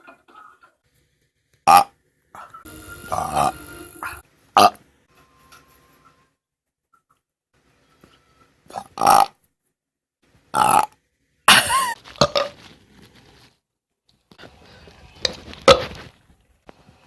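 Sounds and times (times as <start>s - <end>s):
person burping: 1.7s - 1.9s, 4.6s - 4.8s, 10.6s - 10.9s.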